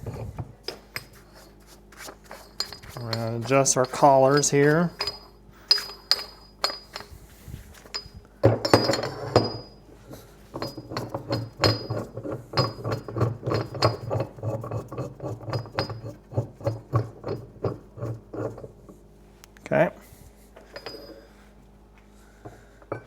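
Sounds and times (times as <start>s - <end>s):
rattling metal scrape: 0.0s - 8.1s
steel parts clinking: 2.3s - 9.8s, 20.6s - 21.3s.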